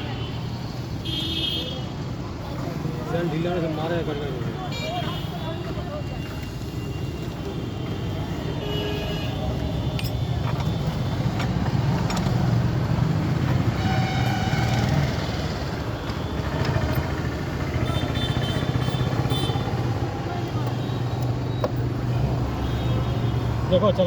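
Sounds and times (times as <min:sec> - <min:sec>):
motorcycle engine rumbling: 0:09.5 - 0:22.4
vehicle horns tooting: 0:13.6 - 0:17.1, 0:17.7 - 0:23.9.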